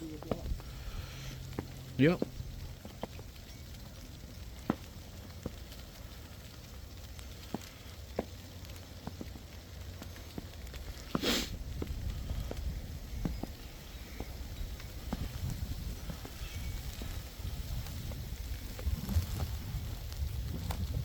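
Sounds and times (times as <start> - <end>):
faint ticks and crackles: 0.0 - 21.0
steady low rumble: 0.0 - 21.0
short rustle: 9.9 - 21.0.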